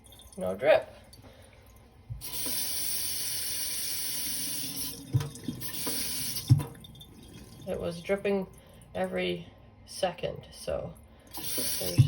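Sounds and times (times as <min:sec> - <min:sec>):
faucet running into sink: 0:02.1 - 0:08.2, 0:11.3 - 0:12.0.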